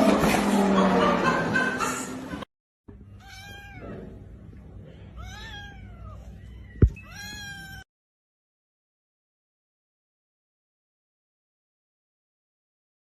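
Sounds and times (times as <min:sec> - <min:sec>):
cat meowing: 0:03.1 - 0:04.2, 0:05.1 - 0:07.9.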